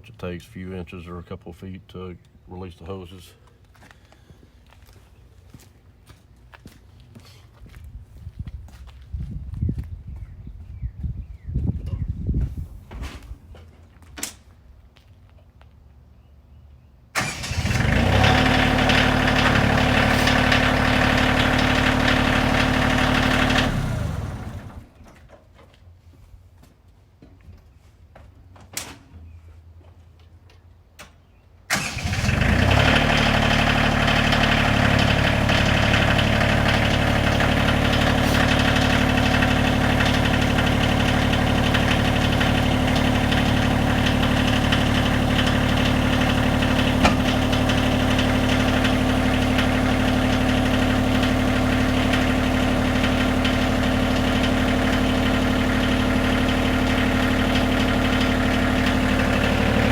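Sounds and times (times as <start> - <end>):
diesel engine starting and idling: 17.1 - 25.3, 31.7 - 59.9.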